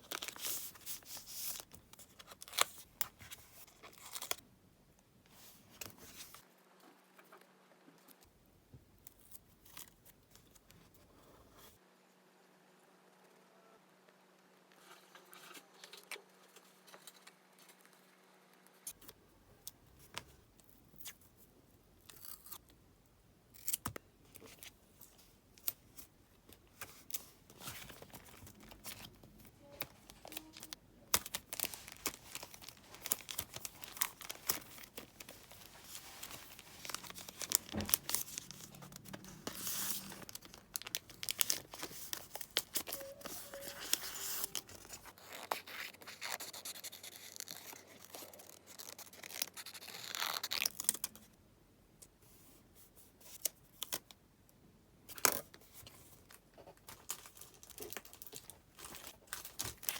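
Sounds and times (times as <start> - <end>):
paper rustling and tearing: 29.8 - 51.0.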